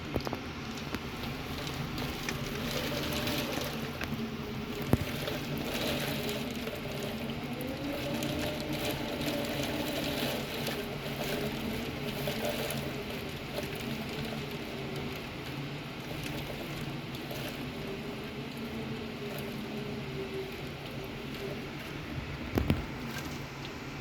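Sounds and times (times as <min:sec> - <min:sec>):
heavy rain pattering: 0:00.0 - 0:24.0
wind moaning: 0:01.4 - 0:15.1.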